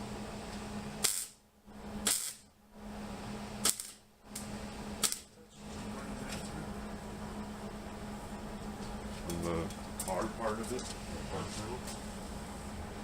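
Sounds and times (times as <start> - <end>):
welding tacks crackling: 1.0 - 1.4, 2.1 - 2.4, 3.6 - 5.3.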